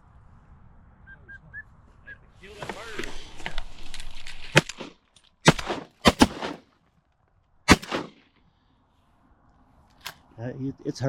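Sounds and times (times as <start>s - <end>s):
shotgun blasts: 4.5s - 6.7s, 7.7s - 8.3s.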